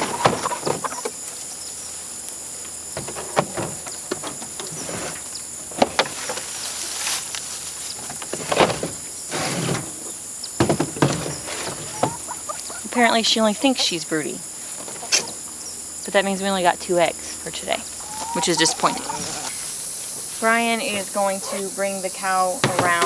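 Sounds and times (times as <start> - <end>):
high insect drone: 0.0 - 23.0
coop doors knocking and rattling: 2.9 - 4.9, 10.6 - 12.3, 22.6 - 23.0.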